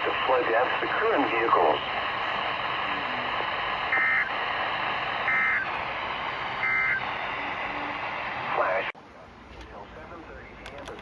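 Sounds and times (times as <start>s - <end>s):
radio static hiss: 0.0s - 9.0s.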